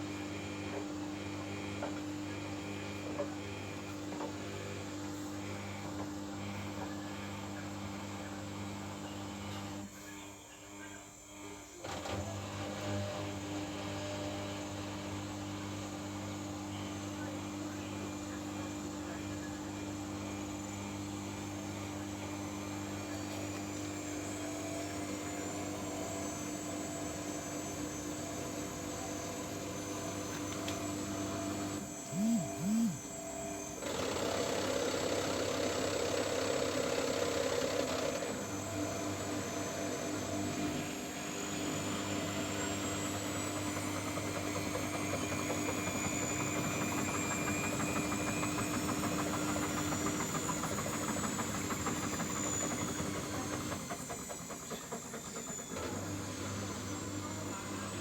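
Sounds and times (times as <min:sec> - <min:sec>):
washing machine motor hum: 0:12.3 - 0:58.0
short whirs: 0:31.9 - 0:33.2.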